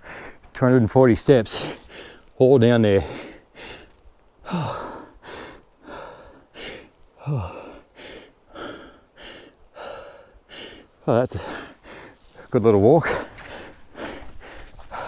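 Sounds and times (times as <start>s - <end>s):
man breathing hard: 3.0s - 15.0s
man sighing: 4.4s - 5.0s, 7.2s - 7.8s.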